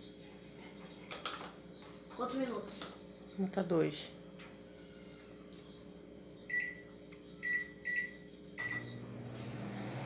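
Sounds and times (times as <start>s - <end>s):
microwave oven humming: 0.0s - 10.0s
microwave keypad beeping: 6.5s - 6.8s, 7.4s - 9.0s.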